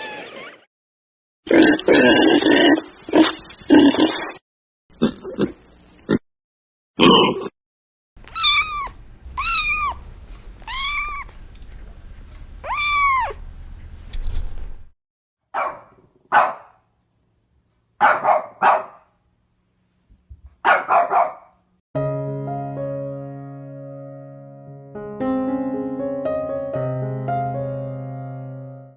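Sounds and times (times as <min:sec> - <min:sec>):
cat meowing: 0:08.2 - 0:14.9
dog barking: 0:15.5 - 0:16.8, 0:18.0 - 0:19.1, 0:20.6 - 0:21.6.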